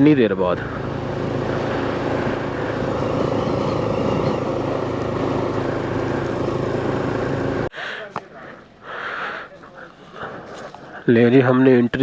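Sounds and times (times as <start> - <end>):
road and wind noise: 0.0 - 8.8
motorcycle engine running: 0.5 - 7.7.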